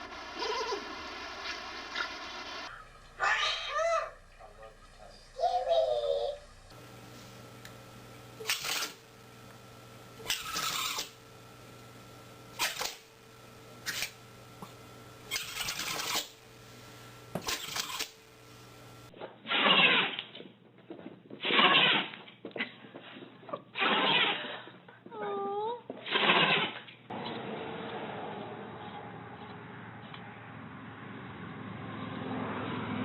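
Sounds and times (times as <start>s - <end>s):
animal sneezing: 19.5s - 20.2s, 21.4s - 22.1s, 23.8s - 24.6s, 26.0s - 26.8s.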